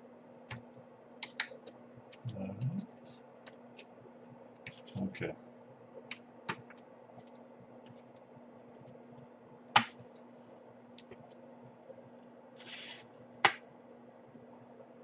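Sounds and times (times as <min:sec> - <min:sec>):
faint small ticks of parts: 0:06.1 - 0:09.3
brief scrape: 0:12.6 - 0:13.1.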